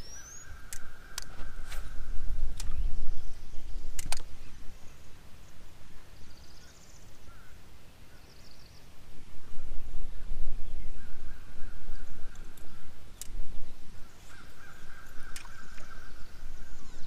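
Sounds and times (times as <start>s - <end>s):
faint bird trills: 0.0s - 3.4s, 10.8s - 17.0s
sharp clicks: 2.5s - 2.8s, 3.9s - 4.3s.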